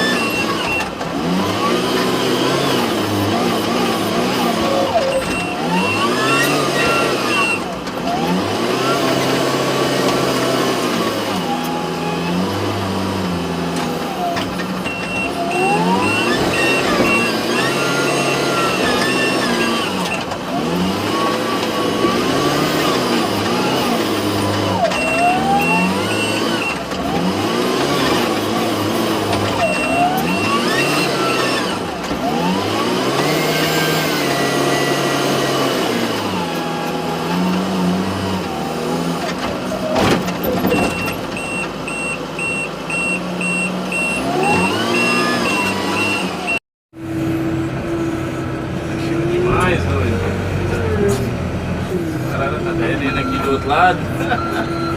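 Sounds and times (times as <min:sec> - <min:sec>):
diesel engine revving: 0:00.0 - 0:54.9
reversing alarm beeping: 0:04.8 - 0:07.7, 0:14.8 - 0:20.2, 0:24.6 - 0:26.8, 0:29.6 - 0:31.8, 0:40.7 - 0:46.6, 0:52.8 - 0:54.9.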